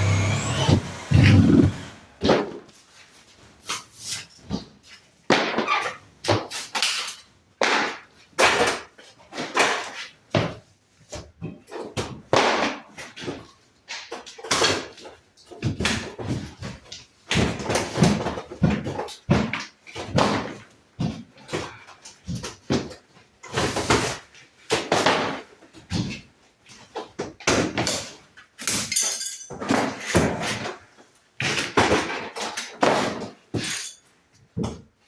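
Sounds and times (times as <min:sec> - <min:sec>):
wall being broken out: 0:00.0 - 0:02.2.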